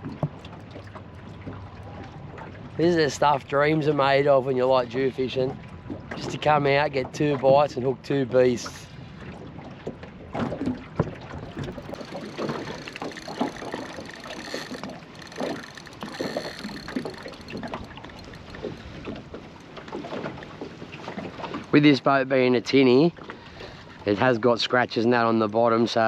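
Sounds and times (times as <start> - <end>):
water lapping against boat hull: 0.0 - 3.8, 5.4 - 21.7.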